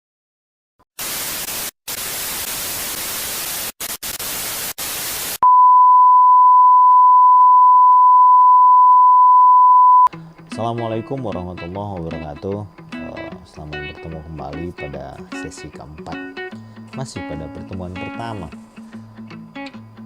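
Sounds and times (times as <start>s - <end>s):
static hiss: 1.0s - 5.4s.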